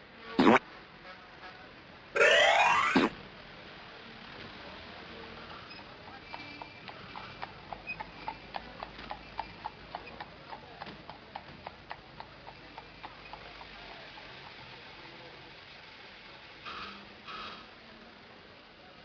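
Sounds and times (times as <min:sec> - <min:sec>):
clip-clop hollow knocks: 0:06.3 - 0:14.0.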